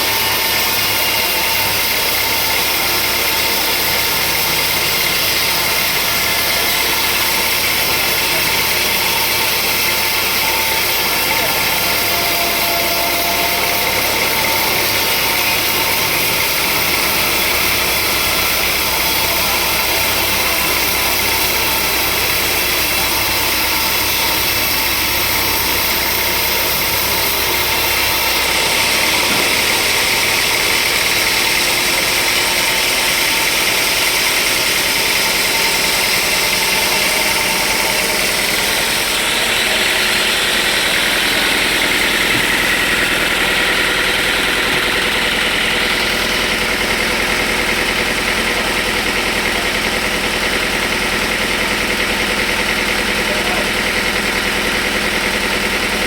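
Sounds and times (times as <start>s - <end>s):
engine hum: 0.0s - 56.0s
sawmill machinery running: 0.0s - 56.0s.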